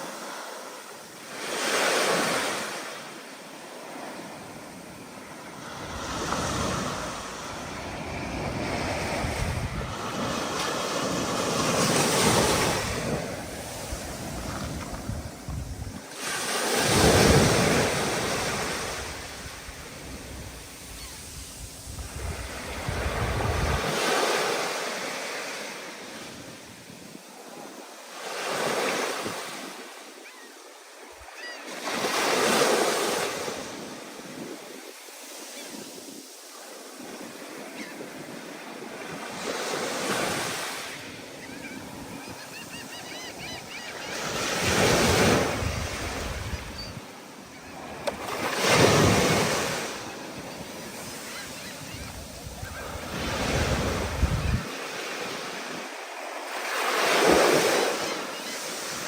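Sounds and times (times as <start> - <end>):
ocean waves breaking: 0.0 - 26.6, 31.7 - 59.0
wind on microphone: 5.8 - 16.1, 16.8 - 24.1, 44.2 - 47.1, 47.8 - 54.7.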